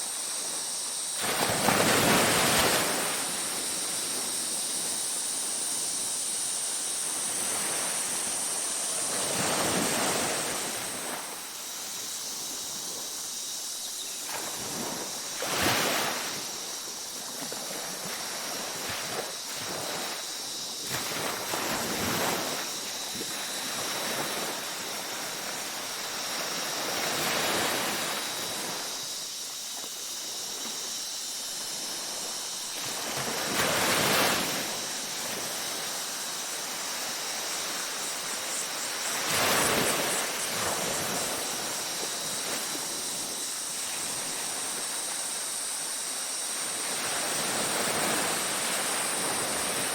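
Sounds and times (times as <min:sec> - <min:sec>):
ocean waves breaking on beach: 0:00.0 - 0:49.9.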